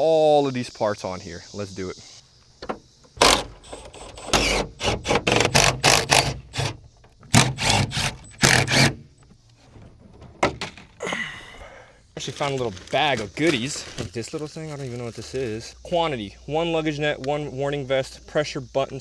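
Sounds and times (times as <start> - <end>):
car parts scraping and clunking: 2.6 - 11.2, 12.2 - 15.6.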